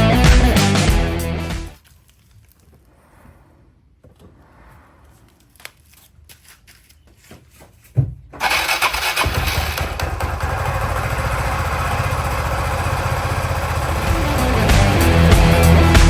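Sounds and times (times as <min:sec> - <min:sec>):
scooter engine running: 0:08.4 - 0:16.0.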